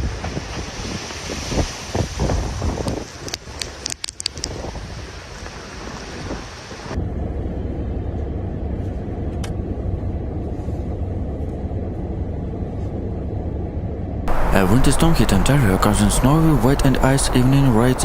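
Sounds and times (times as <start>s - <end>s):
storm wind hissing: 0.0s - 7.7s, 14.3s - 18.0s
steady low rumble: 6.9s - 18.0s.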